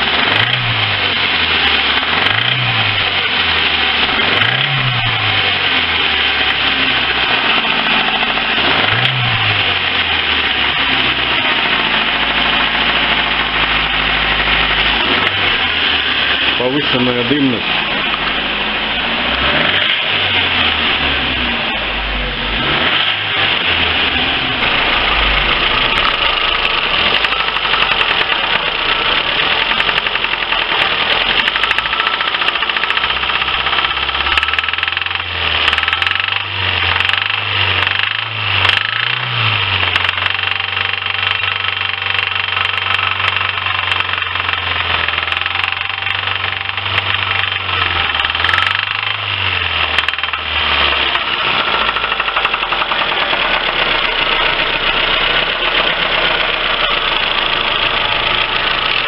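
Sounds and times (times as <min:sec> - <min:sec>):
car engine running with knock: 0:00.0 - 0:10.4, 0:24.6 - 0:59.0.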